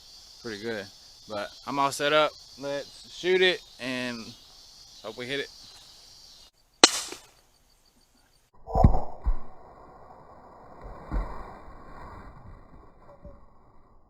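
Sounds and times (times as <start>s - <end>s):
crickets chirping: 0.0s - 14.0s
blank gunshot: 6.8s - 7.3s.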